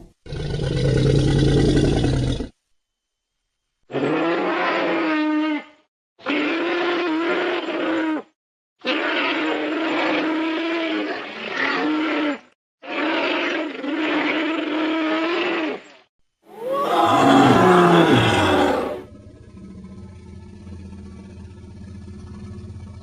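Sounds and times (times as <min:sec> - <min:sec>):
creature roaring: 0:16.5 - 0:19.1
deep creature roar falling in pitch: 0:16.5 - 0:19.1.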